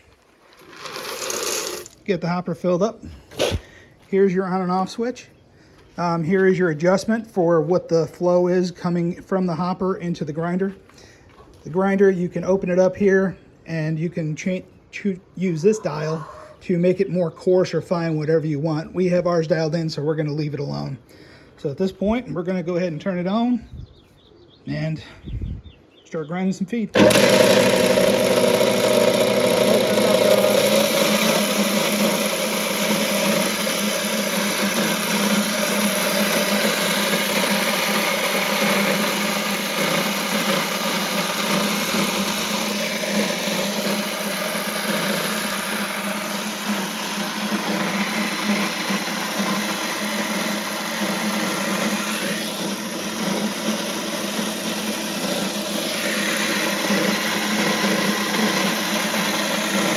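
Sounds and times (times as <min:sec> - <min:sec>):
grain mill grinding: 0:00.0 - 0:02.1, 0:27.0 - 0:59.9.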